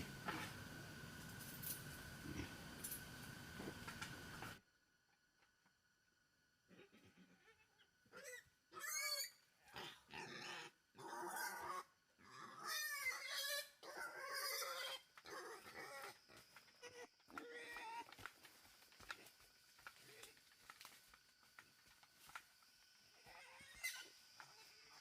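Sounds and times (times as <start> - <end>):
wild boar squealing and grunting: 6.7 - 18.1, 23.1 - 25.0.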